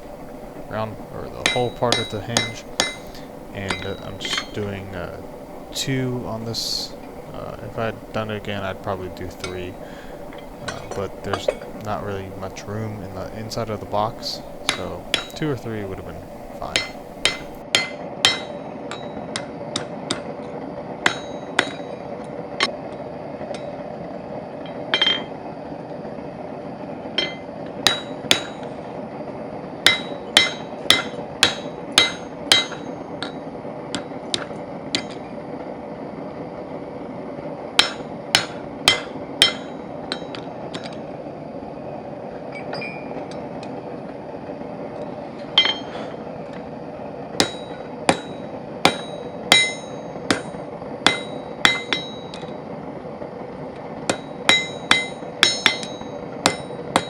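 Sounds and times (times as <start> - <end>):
steady hum: 0.0 - 17.7
hammer striking metal punch: 0.0 - 18.5, 54.1 - 57.0.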